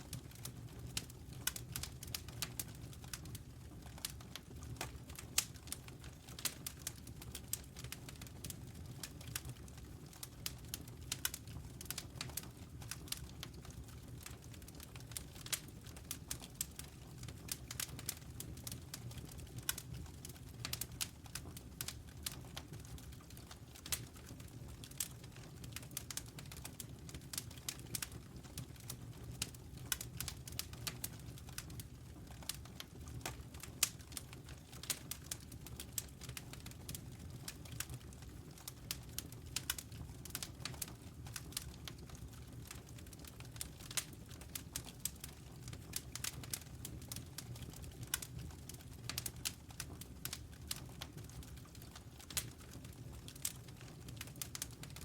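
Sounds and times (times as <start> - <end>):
low rumble of fire: 0.0 - 55.0
campfire crackling: 19.6 - 24.2, 28.8 - 55.0.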